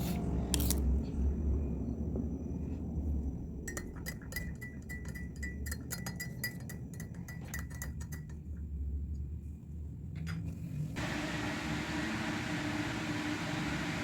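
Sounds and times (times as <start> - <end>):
spoon clinking in a glass: 3.6 - 8.4.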